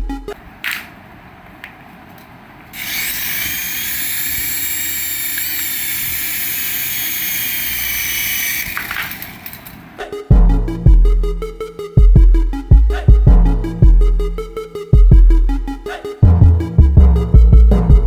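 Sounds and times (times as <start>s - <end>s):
toy electric motor whirring: 2.7s - 9.8s.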